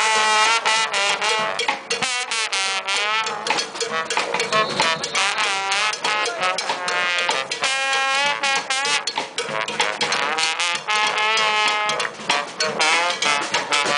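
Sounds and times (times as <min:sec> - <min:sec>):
brass band playing: 0:00.0 - 0:13.9
percussion hits: 0:00.0 - 0:13.9.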